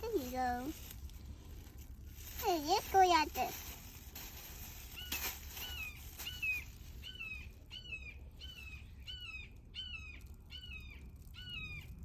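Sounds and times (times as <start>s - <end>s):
bird calling: 4.9s - 11.9s.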